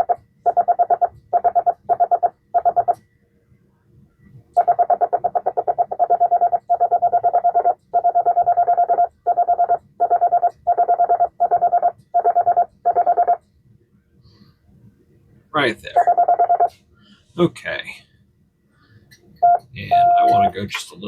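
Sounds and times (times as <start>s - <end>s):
morse code beeping: 0.0s - 3.0s, 4.6s - 13.4s, 15.9s - 16.7s, 19.4s - 20.6s.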